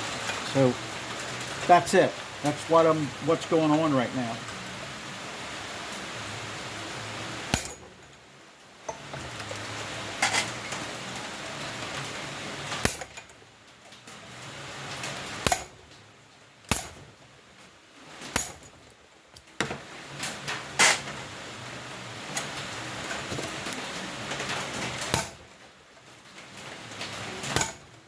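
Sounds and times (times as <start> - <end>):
steady hiss: 0.0 - 28.0
metal tools clinking: 7.5 - 8.2, 10.2 - 11.0, 11.8 - 13.4, 15.0 - 15.8, 16.7 - 17.1, 18.2 - 19.5, 20.8 - 21.2, 24.4 - 25.5, 27.5 - 27.9.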